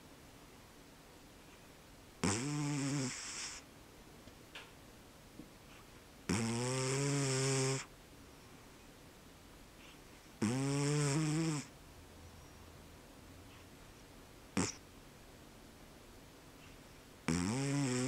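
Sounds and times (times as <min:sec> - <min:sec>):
cat snoring: 0:02.2 - 0:03.6, 0:06.3 - 0:07.9, 0:10.4 - 0:11.7, 0:14.6 - 0:14.8, 0:17.3 - 0:18.0.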